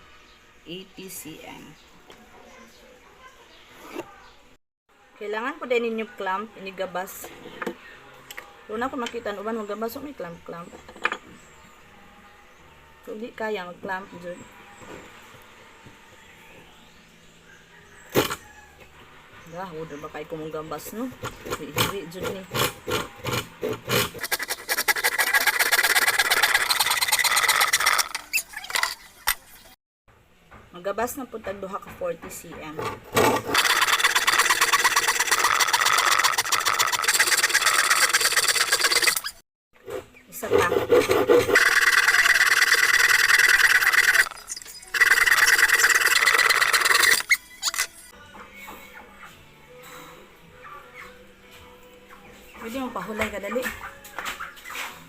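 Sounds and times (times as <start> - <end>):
hand saw cutting wood: 21.2 - 29.0, 32.8 - 47.9.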